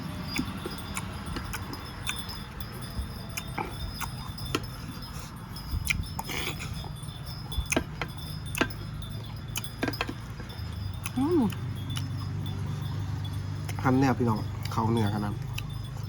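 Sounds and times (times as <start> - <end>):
chewing: 0.0 - 16.0.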